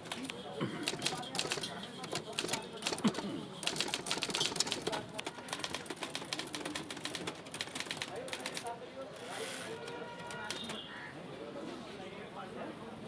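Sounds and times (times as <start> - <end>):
manual typewriter typing: 0.0 - 10.8.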